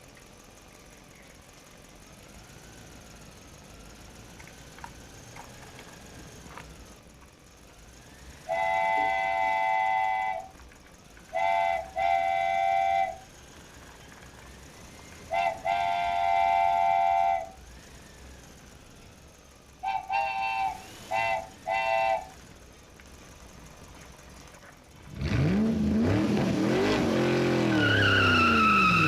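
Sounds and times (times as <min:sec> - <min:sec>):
train horn blasts: 0:08.5 - 0:10.5, 0:11.3 - 0:13.2, 0:15.3 - 0:17.6, 0:19.8 - 0:22.3.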